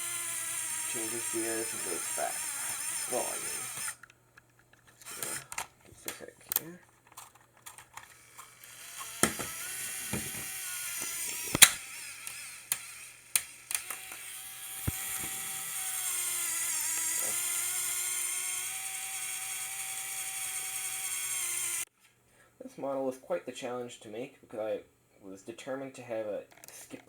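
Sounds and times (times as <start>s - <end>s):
small electric motor whining: 0.0s - 4.1s, 5.0s - 5.7s, 8.0s - 21.9s
plastic parts clicking and knocking: 0.0s - 21.4s, 26.4s - 27.0s.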